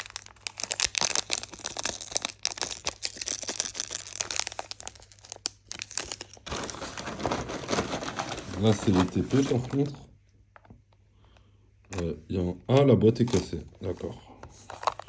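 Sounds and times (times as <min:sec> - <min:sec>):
plastic packaging crinkling: 0:00.0 - 0:10.0, 0:13.1 - 0:15.0.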